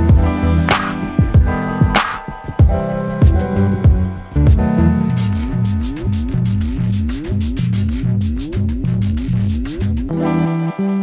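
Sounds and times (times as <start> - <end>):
hip-hop instrumental beat: 0.0 - 10.1
snare drum hit: 0.7 - 1.2, 2.0 - 2.3.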